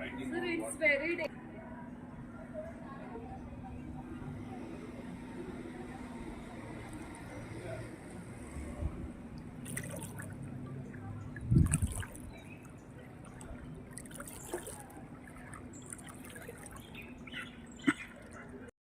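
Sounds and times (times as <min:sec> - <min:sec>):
small water splashes: 0:06.5 - 0:07.8, 0:09.2 - 0:18.7
water trickling and dripping: 0:09.3 - 0:18.7.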